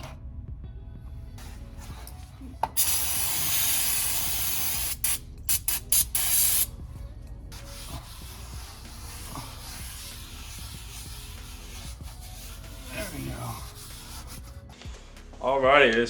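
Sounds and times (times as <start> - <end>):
aerosol spray can hissing: 2.8 - 6.7.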